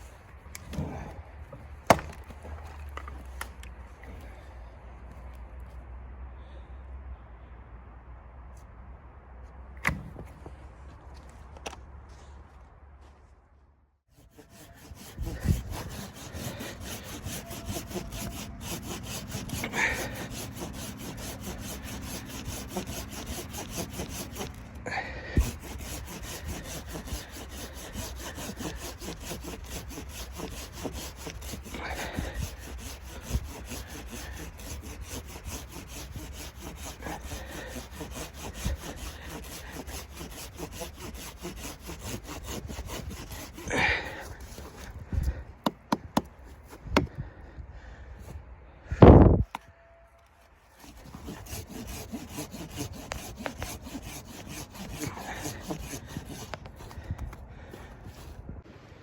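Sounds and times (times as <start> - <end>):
rasping rubbing sound: 14.1 - 45.4, 50.6 - 58.6.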